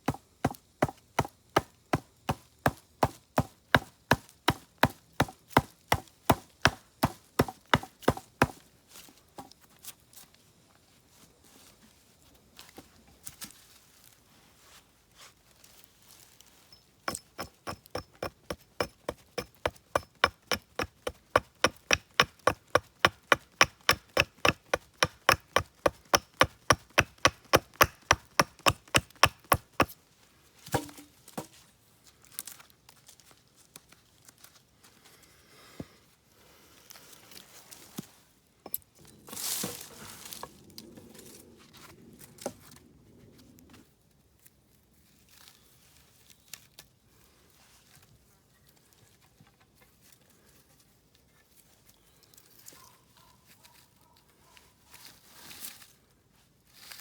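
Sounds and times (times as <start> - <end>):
tool knocking on wood: 6.7 - 8.3, 17.1 - 29.9.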